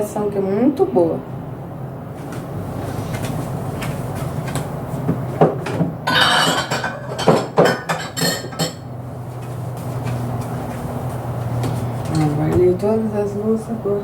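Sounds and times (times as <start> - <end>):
steady low hum: 0.0 - 14.0
crockery knocking and clinking: 5.4 - 8.8.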